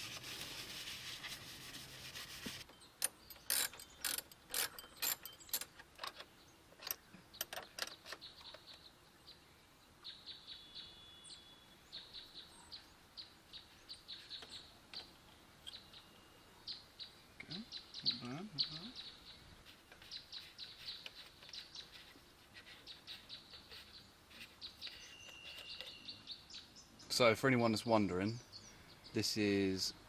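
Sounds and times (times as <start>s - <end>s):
rag rubbing: 0.0s - 2.7s
metal tools clinking: 3.0s - 6.2s
bird chirps: 6.2s - 29.8s.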